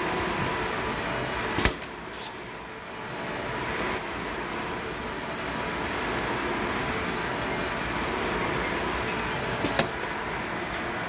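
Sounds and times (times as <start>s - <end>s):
sewing machine humming: 3.1s - 11.0s.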